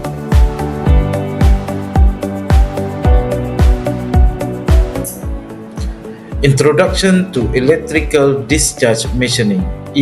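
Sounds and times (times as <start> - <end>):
deep beat: 0.0 - 7.1
held chords: 0.0 - 10.0.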